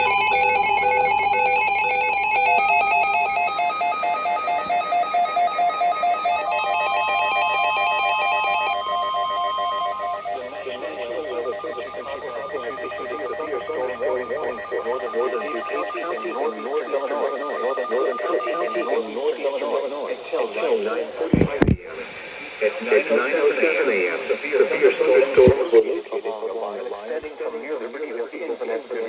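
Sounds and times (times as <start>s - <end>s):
electronic beeps stepping between notes: 0.0s - 19.0s
steady electronic tone: 0.0s - 19.0s.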